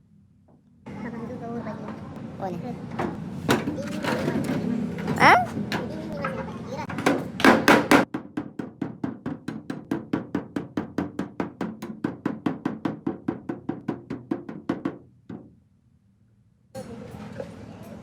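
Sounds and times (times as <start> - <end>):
hammer tapping sheet metal: 6.9 - 15.5.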